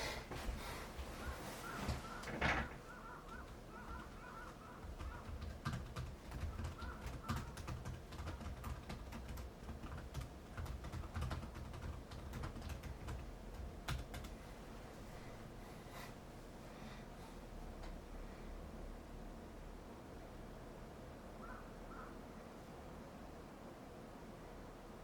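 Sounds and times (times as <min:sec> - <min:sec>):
faint bird call: 0:01.2 - 0:05.3, 0:06.5 - 0:07.6, 0:21.4 - 0:22.3.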